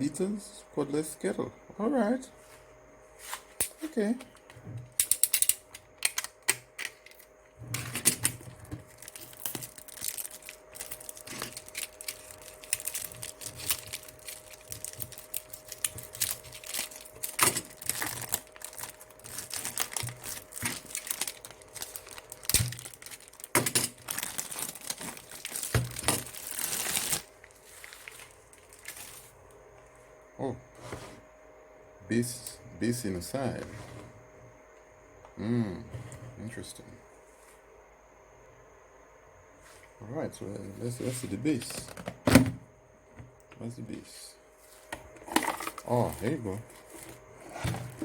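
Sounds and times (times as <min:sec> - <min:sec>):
packaging rustling: 0:06.8 - 0:29.4, 0:45.2 - 0:48.0.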